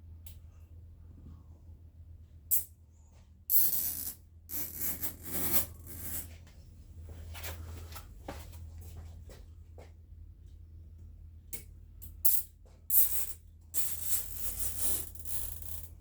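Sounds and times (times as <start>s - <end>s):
scraping and rubbing on metal parts: 3.5s - 6.4s, 12.3s - 16.0s.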